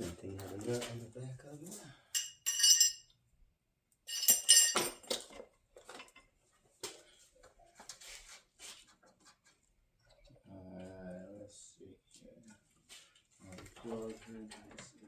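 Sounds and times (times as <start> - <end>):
metal tools clinking: 2.1 - 3.1, 4.1 - 5.4.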